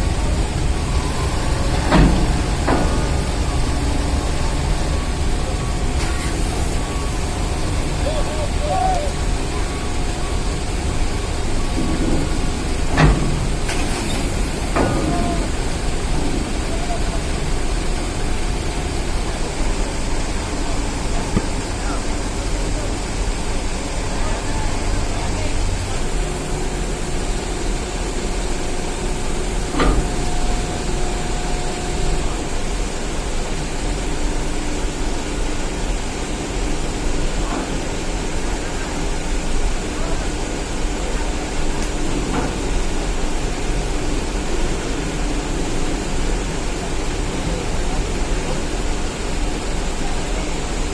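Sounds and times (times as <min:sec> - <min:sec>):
hiss: 0:00.0 - 0:10.0, 0:11.0 - 0:34.5
heavy vehicle engines rumbling: 0:00.0 - 0:50.9.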